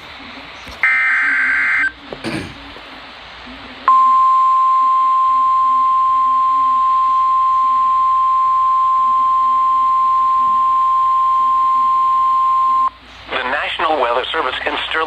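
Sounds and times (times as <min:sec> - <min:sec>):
loud steady alarm beep: 0:00.8 - 0:01.9, 0:03.9 - 0:13.0.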